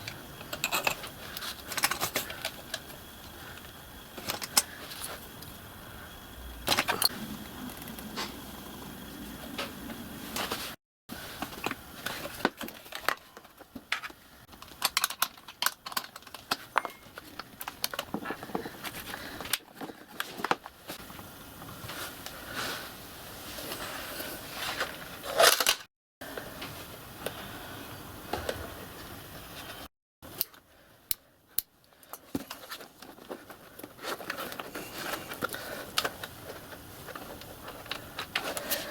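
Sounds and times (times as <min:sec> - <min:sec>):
hand tools and metal parts clicking: 0:00.0 - 0:05.5, 0:11.4 - 0:20.6.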